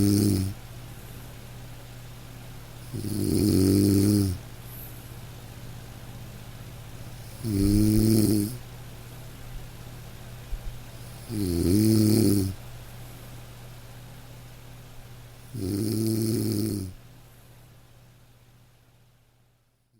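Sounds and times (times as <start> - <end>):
nasal snoring: 0.0 - 0.6, 2.9 - 4.4, 7.2 - 8.6, 11.0 - 12.6, 15.5 - 17.0
steady low hum: 0.0 - 19.9.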